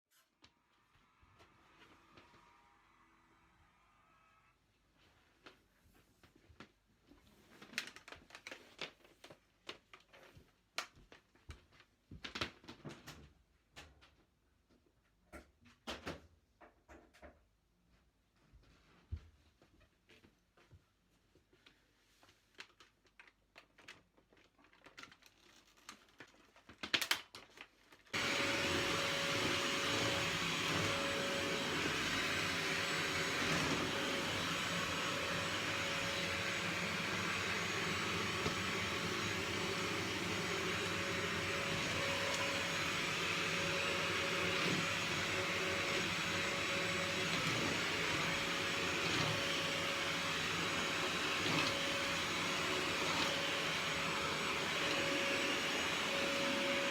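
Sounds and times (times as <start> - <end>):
vacuum cleaner whining: 0.8 - 4.6, 28.2 - 56.9.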